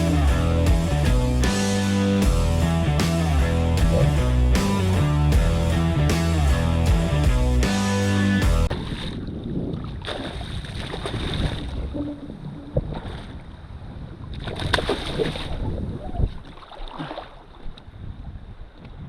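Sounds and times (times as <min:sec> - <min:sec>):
wind buffeting microphone: 0:08.7 - 0:16.6, 0:17.5 - 0:19.0
water sloshing and splashing: 0:08.7 - 0:18.0.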